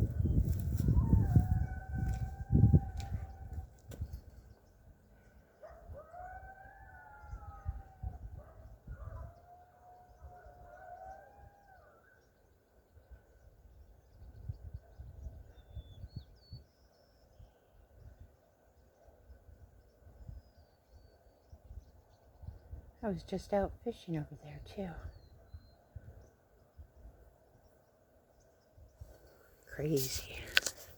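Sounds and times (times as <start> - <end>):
coyotes howling: 0.4 - 3.9, 5.2 - 12.4.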